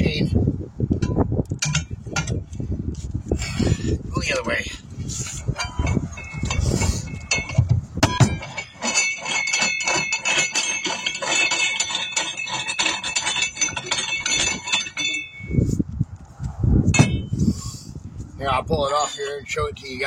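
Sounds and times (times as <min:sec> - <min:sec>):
low rumbling: 0:00.0 - 0:08.7, 0:12.5 - 0:20.0
metal clinking against wheel rim: 0:00.9 - 0:02.7, 0:03.4 - 0:15.8, 0:16.9 - 0:17.4.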